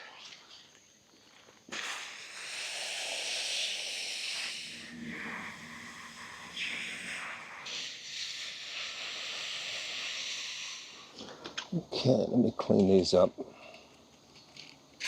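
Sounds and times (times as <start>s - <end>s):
water spraying onto plants: 1.7s - 11.3s.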